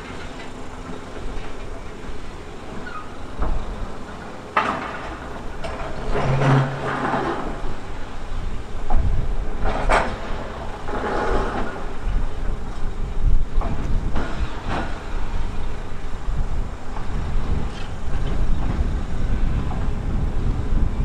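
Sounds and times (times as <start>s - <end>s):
metal scraping and clanking on rock: 0.0s - 12.9s, 17.5s - 18.6s
diesel engine running: 0.0s - 21.0s.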